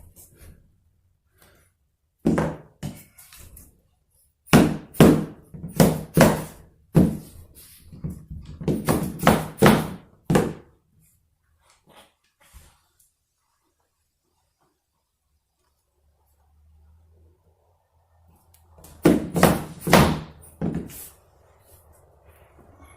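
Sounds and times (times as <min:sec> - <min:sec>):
hammer knocking on wooden floor: 0:19.0 - 0:20.9.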